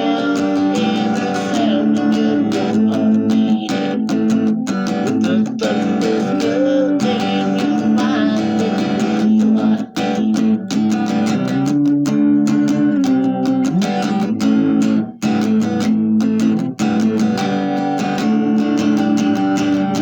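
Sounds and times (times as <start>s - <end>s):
strummed guitar music: 0.0s - 20.0s.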